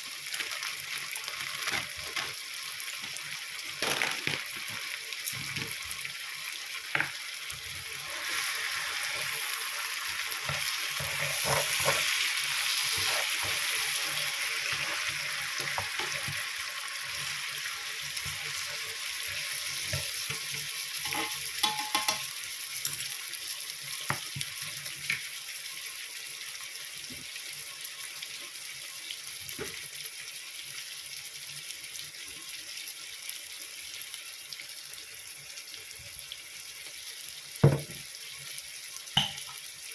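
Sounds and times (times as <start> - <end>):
food sizzling in a pan: 0.0 - 39.9
utensil scraping a pan: 8.1 - 16.4.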